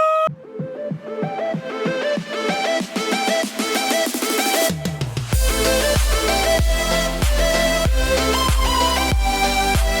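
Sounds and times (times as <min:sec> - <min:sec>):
deep kick drum: 0:05.3 - 0:10.0.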